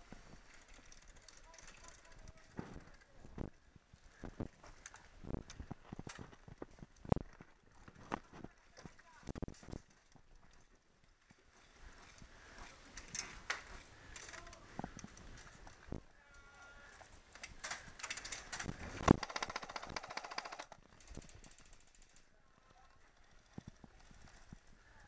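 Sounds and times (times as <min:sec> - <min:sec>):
gear clicks and knocks: 0:00.1 - 0:03.5, 0:04.2 - 0:16.4, 0:17.0 - 0:22.2
airsoft gun full-auto burst: 0:19.2 - 0:20.7.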